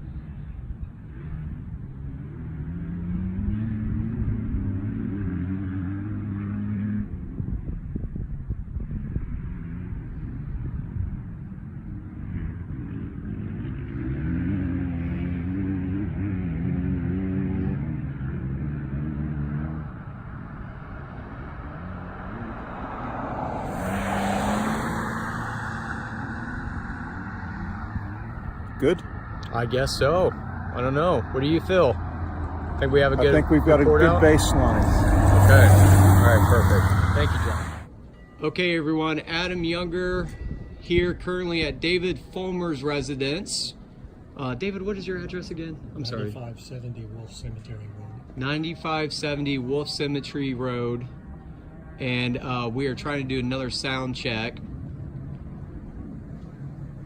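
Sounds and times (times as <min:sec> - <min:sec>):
dirt bike engines: 0:00.0 - 0:38.0
wind buffeting microphone: 0:07.1 - 0:11.6, 0:23.6 - 0:37.7.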